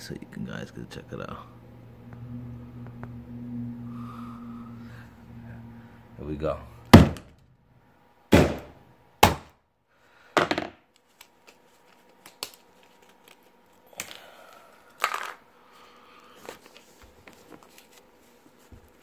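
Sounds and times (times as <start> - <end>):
hammer banging on plastic tag: 6.9 - 7.3, 8.3 - 9.5
small clicks of plastic pieces: 14.9 - 15.4.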